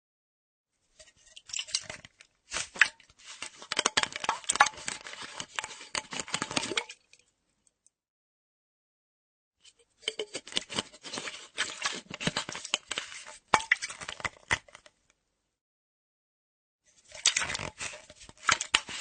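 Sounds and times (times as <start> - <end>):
metal screw cap turning: 9.7 - 14.5.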